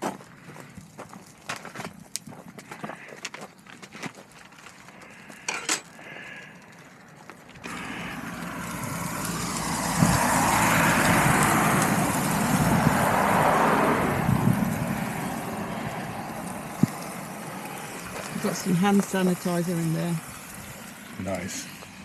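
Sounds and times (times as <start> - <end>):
kitchenware clinking: 5.5 - 5.9
vehicle passing close by: 7.6 - 22.0.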